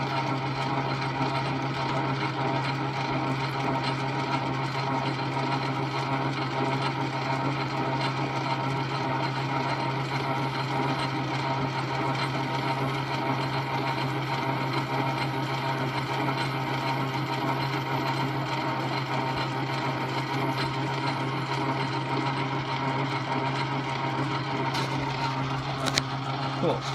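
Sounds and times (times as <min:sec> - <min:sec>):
metal lathe running: 0:00.0 - 0:26.9.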